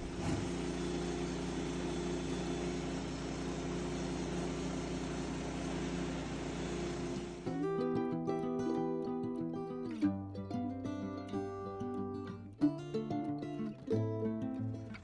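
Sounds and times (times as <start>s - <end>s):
engine running steadily: 0.0s - 7.5s.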